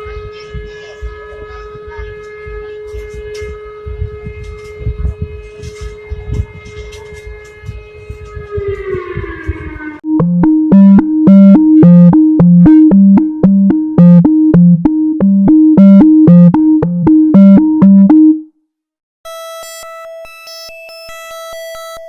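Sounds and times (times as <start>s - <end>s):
electronic alert melody: 10.1s - 18.5s
steady electronic alert tone: 10.1s - 18.5s.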